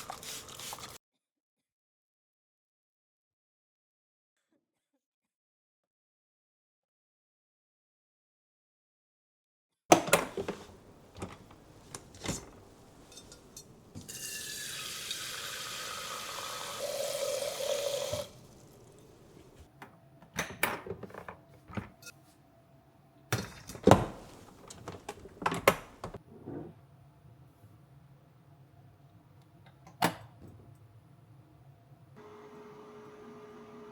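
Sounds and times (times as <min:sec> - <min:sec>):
knocks and clatter of handling: 0:09.9 - 0:14.2, 0:23.3 - 0:26.2
tap running into sink: 0:13.9 - 0:19.6.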